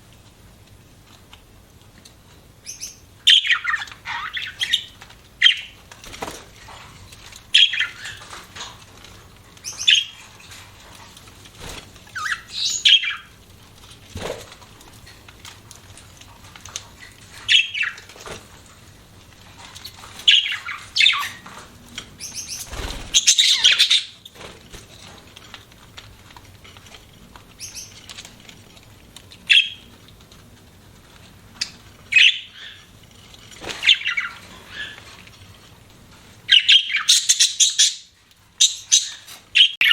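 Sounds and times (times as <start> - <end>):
budgies chirping: 2.6 - 6.4, 7.4 - 8.9, 9.6 - 10.8, 11.6 - 13.4, 17.0 - 18.4, 19.5 - 24.5, 27.5 - 28.2, 29.4 - 30.0, 31.5 - 33.0, 33.6 - 35.2, 36.4 - 39.9.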